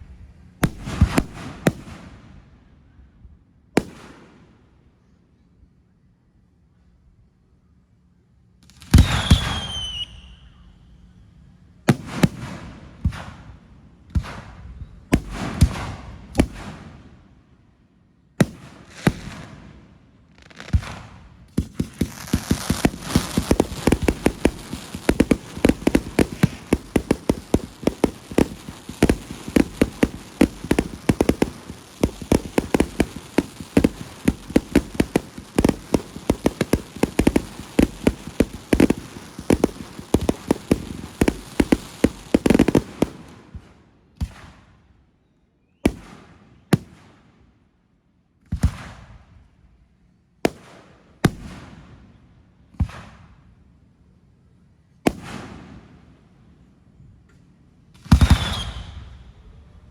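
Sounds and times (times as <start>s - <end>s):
firework whistle: 8.8s - 11.2s, 58.1s - 59.5s
crackle of small pops: 21.5s - 43.2s
firework shell bursts: 21.6s - 43.3s.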